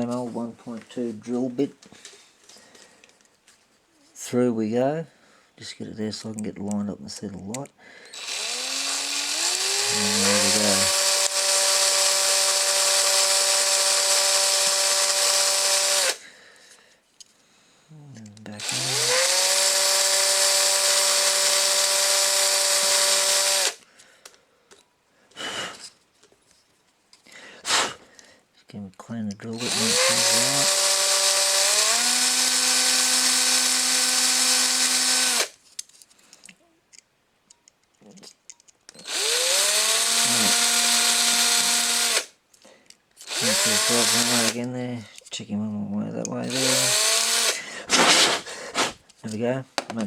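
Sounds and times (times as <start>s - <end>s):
small electric drill whining: 8.1s - 16.2s, 18.6s - 23.8s, 29.6s - 35.6s, 38.9s - 42.4s, 43.2s - 44.6s, 46.5s - 48.5s.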